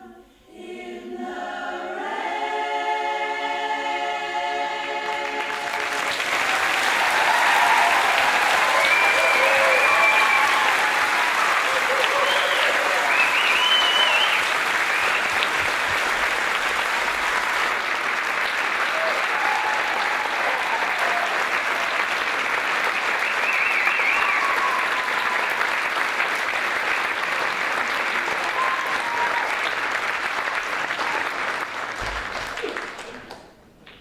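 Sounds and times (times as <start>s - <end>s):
audience applauding: 5.0s - 34.0s
high wavering cheers: 6.3s - 15.4s, 18.8s - 22.1s, 23.2s - 25.7s, 28.3s - 29.7s.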